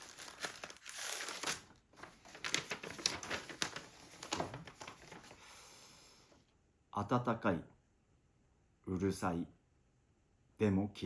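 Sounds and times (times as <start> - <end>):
rustling and crinkling: 0.0 - 5.5.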